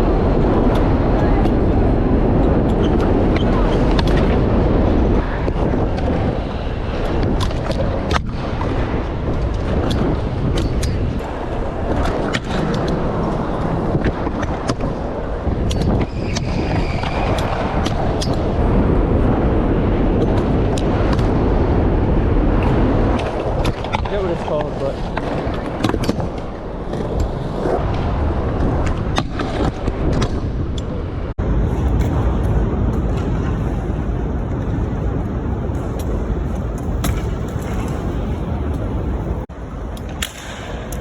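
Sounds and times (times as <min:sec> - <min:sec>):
scooter wheels rolling on concrete: 0:00.0 - 0:41.0
scooter landing clacks: 0:31.7 - 0:41.0.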